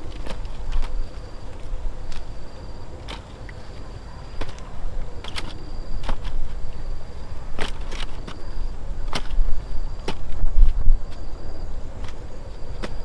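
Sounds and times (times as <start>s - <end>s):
hand tool striking roots: 4.4s - 6.7s, 7.4s - 11.3s, 12.0s - 13.0s.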